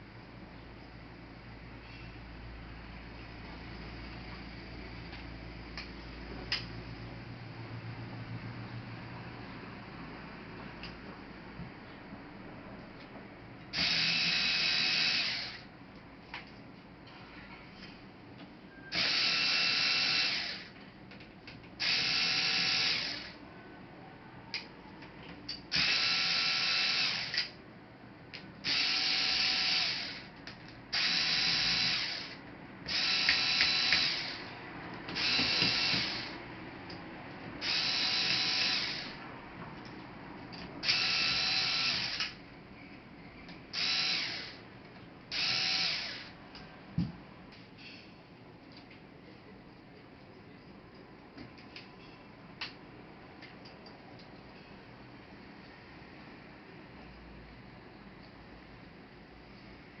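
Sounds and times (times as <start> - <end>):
electric screwdriver whirring: 13.8 - 15.7, 18.9 - 20.7, 21.8 - 23.4, 25.7 - 27.6, 28.6 - 30.3, 30.9 - 34.5, 35.1 - 36.4, 37.6 - 39.2, 40.8 - 42.4, 43.8 - 44.6, 45.3 - 46.4.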